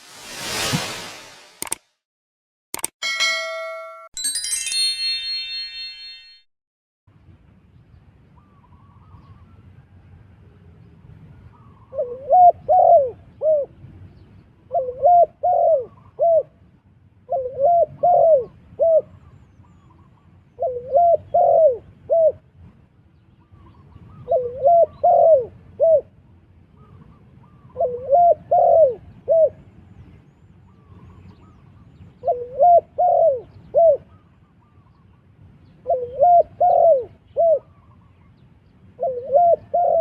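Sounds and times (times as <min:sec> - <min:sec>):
dove cooing: 0:12.0 - 0:13.7, 0:14.7 - 0:16.5, 0:17.3 - 0:19.1, 0:20.6 - 0:22.4, 0:24.3 - 0:26.1, 0:27.8 - 0:29.6, 0:32.2 - 0:34.1, 0:35.9 - 0:37.7, 0:39.0 - 0:40.0.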